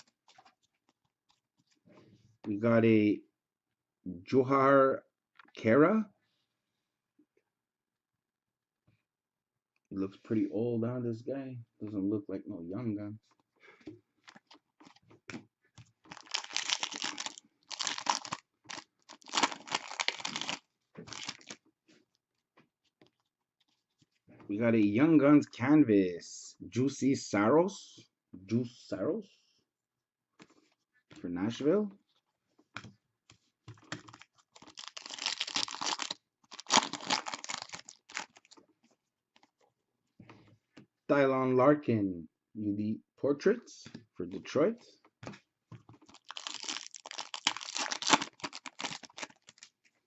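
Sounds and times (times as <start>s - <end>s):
foil wrapper tearing and crinkling: 16.1s - 21.6s, 34.1s - 38.6s, 46.1s - 49.7s.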